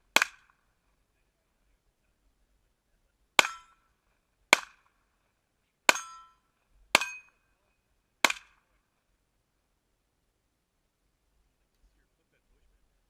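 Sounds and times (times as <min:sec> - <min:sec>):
pistol shots with ringing tail: 0:03.4 - 0:03.9, 0:05.9 - 0:06.4, 0:07.0 - 0:07.5, 0:08.2 - 0:08.7.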